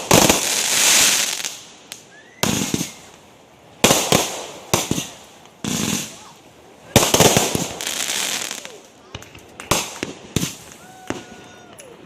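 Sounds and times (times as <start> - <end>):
firework bangs: 0.0 - 3.2, 3.8 - 6.3, 6.9 - 12.0
firework crackling: 0.0 - 12.0
rising firework whistle: 0.6 - 3.2, 10.4 - 12.0.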